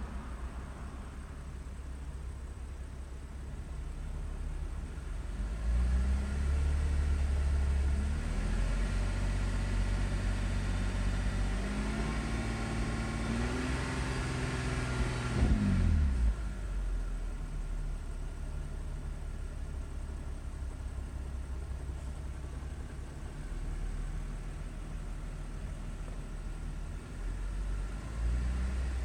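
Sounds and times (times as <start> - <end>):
car engine revving: 5.3 - 16.5.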